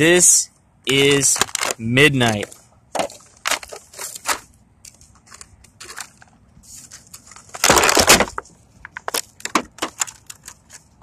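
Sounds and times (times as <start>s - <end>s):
plastic crunching burst: 1.2s - 4.4s, 7.4s - 10.5s.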